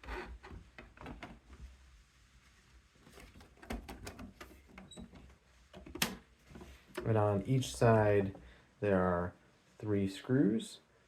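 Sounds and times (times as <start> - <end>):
plastic parts clicking and knocking: 3.4 - 4.9.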